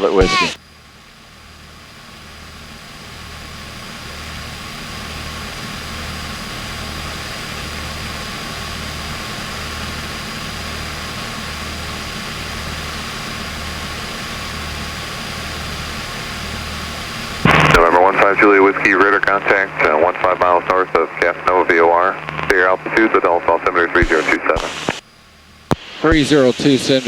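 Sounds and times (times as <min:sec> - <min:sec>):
airplane cabin engine hiss: 0:17.5 - 0:25.0, 0:25.7 - 0:27.0.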